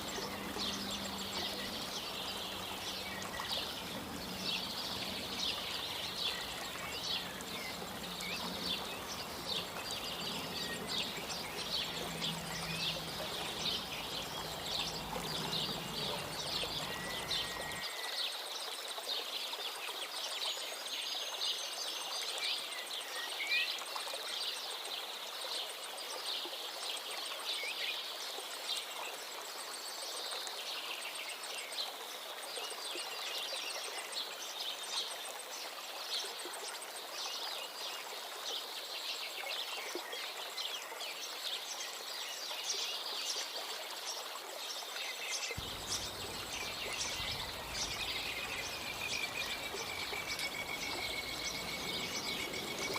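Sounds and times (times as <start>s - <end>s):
small birds chirping: 0.0s - 18.0s, 45.3s - 52.9s.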